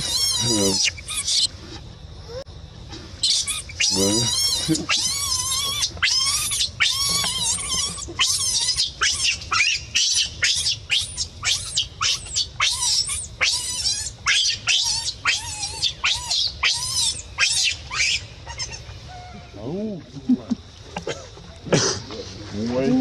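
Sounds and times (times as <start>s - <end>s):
baby monkey screaming: 0.0s - 1.5s, 3.2s - 19.6s.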